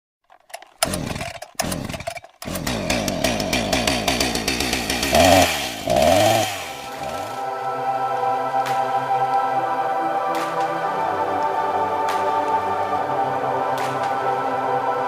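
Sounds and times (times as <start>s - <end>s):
chainsaw engine revving: 0.2s - 7.6s.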